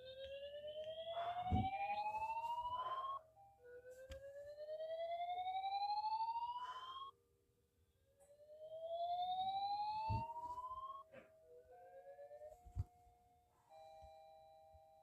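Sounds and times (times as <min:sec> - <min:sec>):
fire alarm whoop: 0:00.0 - 0:07.1, 0:08.3 - 0:11.1.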